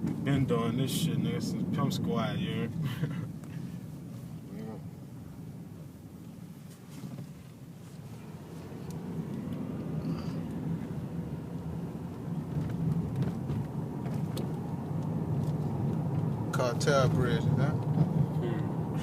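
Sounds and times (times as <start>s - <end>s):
car road noise inside cabin: 0.0s - 19.0s.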